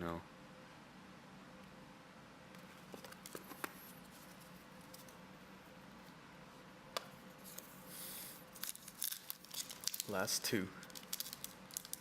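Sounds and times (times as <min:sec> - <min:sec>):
foil pack rustling: 0:08.6 - 0:12.0.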